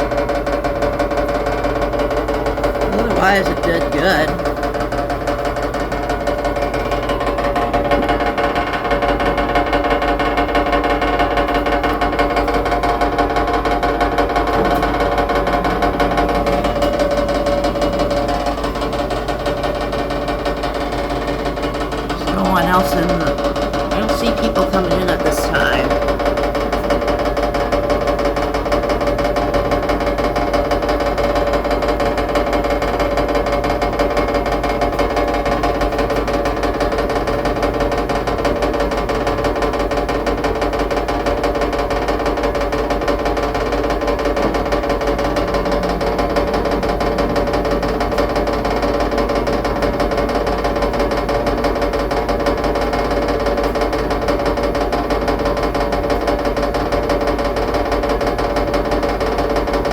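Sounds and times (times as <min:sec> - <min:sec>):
fast rattling knock: 0:00.0 - 0:59.9
washing machine spin whine: 0:00.0 - 0:59.9.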